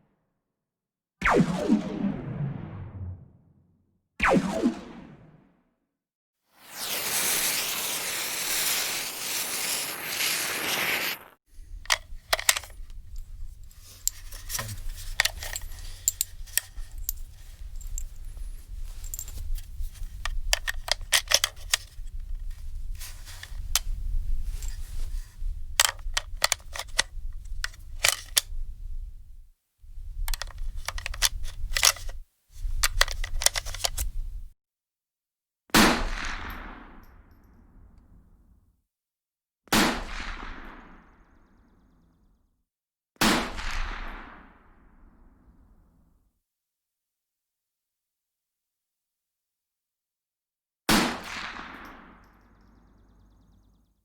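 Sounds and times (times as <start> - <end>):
sharp metallic gun clicks: 11.8 - 18.1, 20.2 - 22.2, 25.8 - 28.6, 30.3 - 32.2, 32.8 - 34.4.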